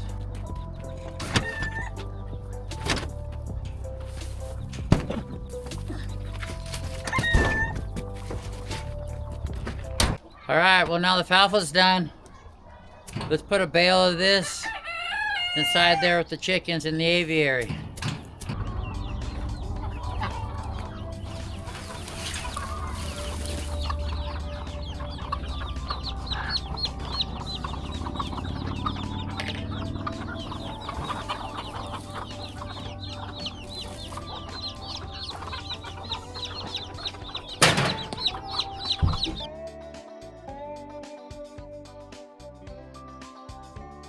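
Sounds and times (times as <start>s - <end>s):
chickens clucking: 0.0s - 39.5s
low rumble: 18.4s - 36.0s.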